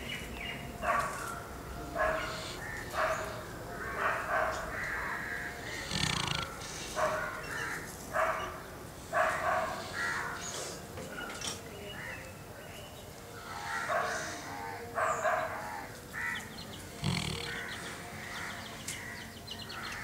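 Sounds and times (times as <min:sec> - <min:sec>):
dog snoring: 0:01.8 - 0:03.4, 0:05.2 - 0:07.5, 0:16.8 - 0:18.6.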